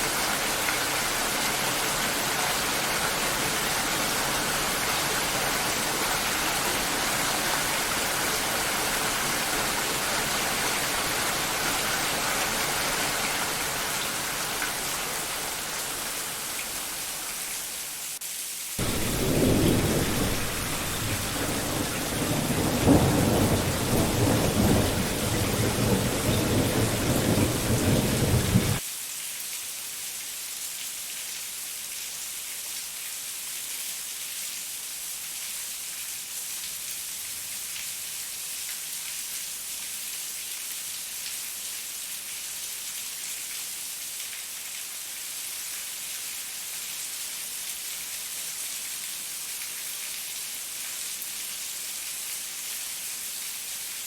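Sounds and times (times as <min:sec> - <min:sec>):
steady rain: 0:00.0 - 0:54.0
deep rumble of thunder: 0:18.8 - 0:28.8.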